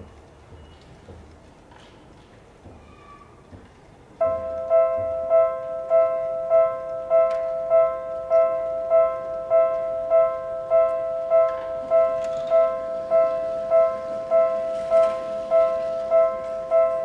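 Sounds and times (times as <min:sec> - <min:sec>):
railroad crossing warning bell: 0:04.2 - 0:17.0.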